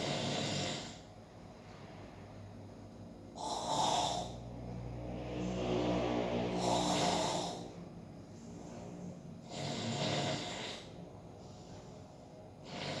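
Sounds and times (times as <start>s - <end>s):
person snoring loudly: 0.0s - 1.1s, 3.4s - 4.5s, 5.4s - 7.8s, 9.4s - 11.0s, 12.6s - 13.0s.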